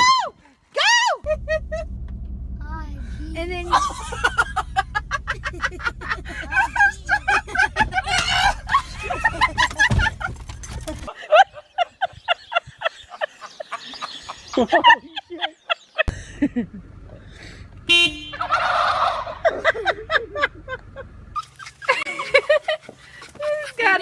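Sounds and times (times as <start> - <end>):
turkeys gobbling: 5.7 - 9.8, 18.3 - 22.0.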